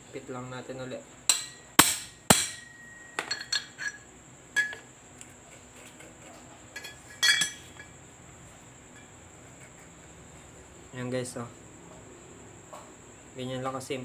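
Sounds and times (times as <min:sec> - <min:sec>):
metal knocks on bicycle frame: 0:01.3 - 0:04.0
light metal clinks and taps: 0:02.6 - 0:04.9, 0:06.7 - 0:08.0, 0:08.8 - 0:09.2.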